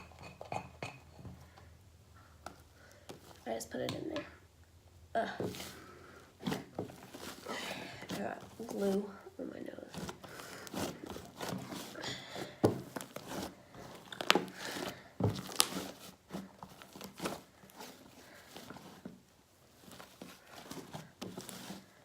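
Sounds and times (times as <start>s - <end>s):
slime squishing and popping: 14.0s - 14.5s, 15.4s - 15.9s.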